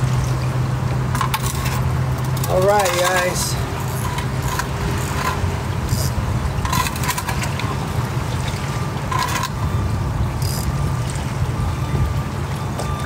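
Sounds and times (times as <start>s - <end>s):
steady low rumble: 0.0s - 12.7s
gear scraping and clicking: 1.1s - 7.8s, 9.1s - 9.6s, 10.4s - 10.7s.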